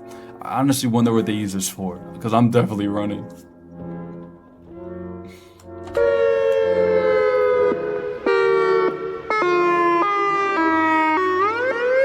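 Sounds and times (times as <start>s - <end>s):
warning siren steady tones: 5.7s - 12.0s.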